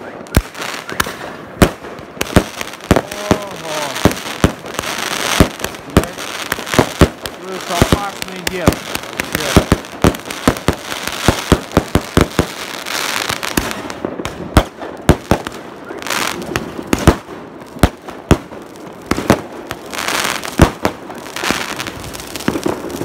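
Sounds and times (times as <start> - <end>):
firecrackers banging: 0.0 - 23.0
firework hiss: 0.4 - 18.4.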